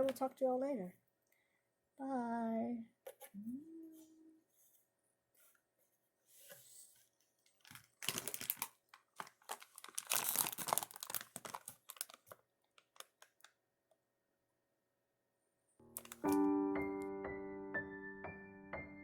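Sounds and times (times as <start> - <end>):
plastic packaging crinkling: 7.4 - 13.6, 15.8 - 16.5.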